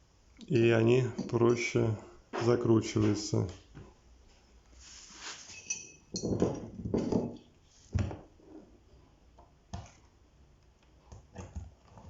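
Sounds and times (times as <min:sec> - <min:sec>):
metallic clink: 0:05.5 - 0:06.4.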